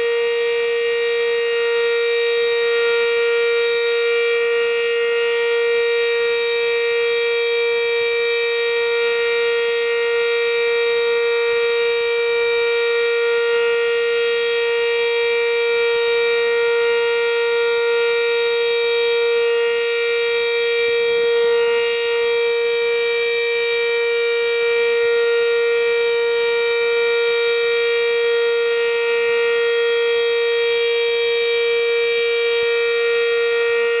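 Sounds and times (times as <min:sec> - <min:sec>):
warning siren steady tone: 0:00.0 - 0:34.0.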